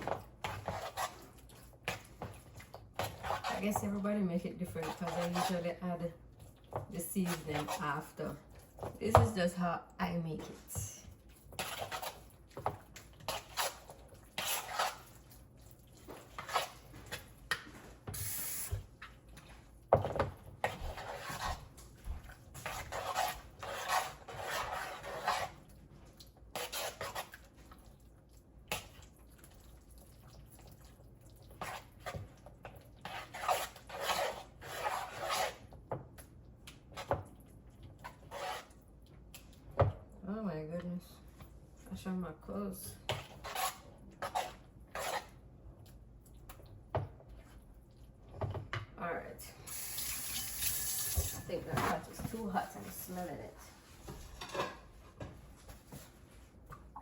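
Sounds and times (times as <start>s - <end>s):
utensils scraping a bowl: 0.1s - 9.6s, 10.4s - 12.3s, 13.2s - 15.4s, 20.6s - 21.8s, 22.6s - 25.7s, 26.5s - 27.5s, 33.0s - 35.8s, 38.0s - 38.8s, 43.1s - 45.4s.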